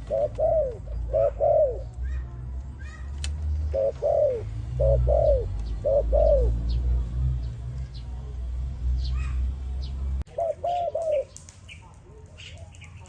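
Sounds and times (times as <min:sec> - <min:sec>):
dove cooing: 0:00.0 - 0:07.1, 0:10.3 - 0:11.4.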